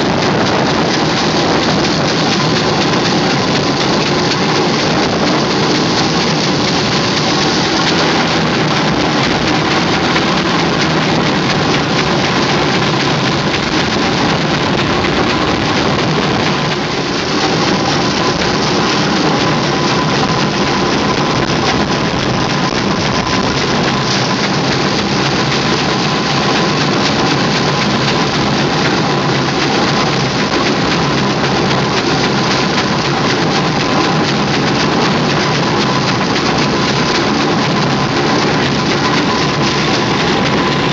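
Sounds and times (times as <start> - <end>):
steam engine hissing: 0.0 - 40.9.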